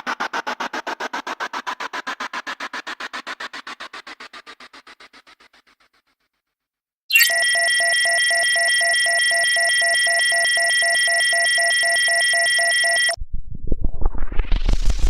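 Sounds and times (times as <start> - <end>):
high pure electronic tones: 7.1 - 13.2
low pulsing beep: 7.1 - 14.0.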